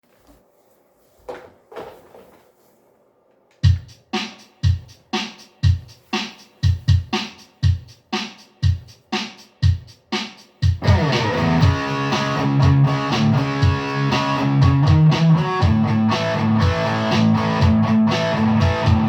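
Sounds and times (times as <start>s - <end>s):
electric guitar playing: 10.8s - 19.0s.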